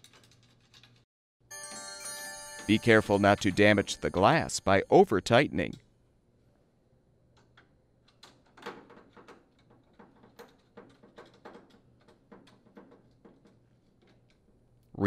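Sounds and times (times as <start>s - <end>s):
tools clicking and knocking: 7.4s - 14.6s.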